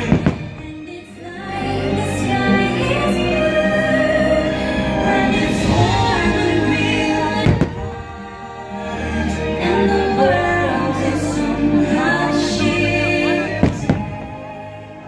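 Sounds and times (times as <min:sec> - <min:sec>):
orchestral music with singer and choir: 0:00.0 - 0:15.0
firework bang: 0:07.4 - 0:08.0.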